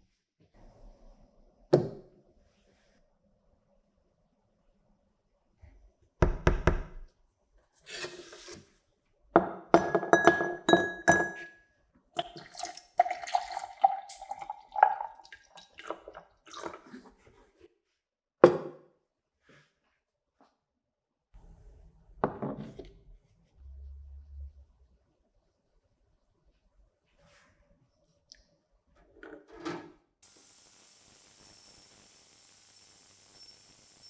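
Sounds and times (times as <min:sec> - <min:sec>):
short hiss: 0:30.2 - 0:34.0.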